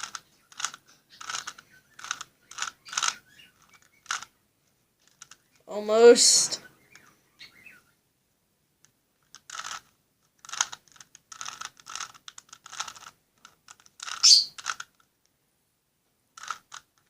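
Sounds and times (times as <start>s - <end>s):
puzzle cube clacking turns: 0.0s - 4.4s, 5.0s - 5.6s, 9.2s - 15.3s, 16.3s - 17.0s.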